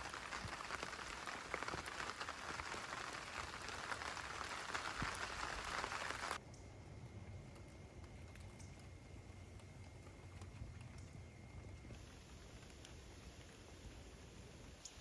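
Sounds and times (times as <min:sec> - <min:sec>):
rain on roof: 0:00.0 - 0:06.4, 0:12.0 - 0:15.0.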